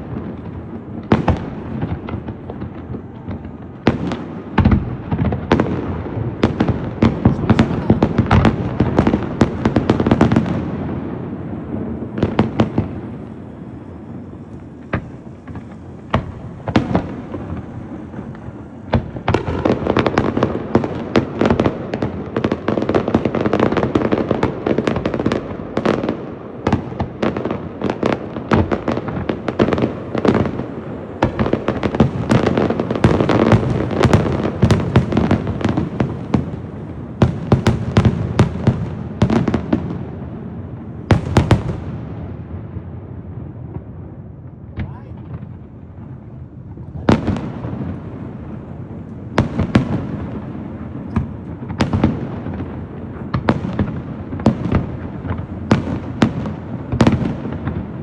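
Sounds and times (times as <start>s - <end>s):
fireworks bangs and crackles: 0.0s - 58.0s.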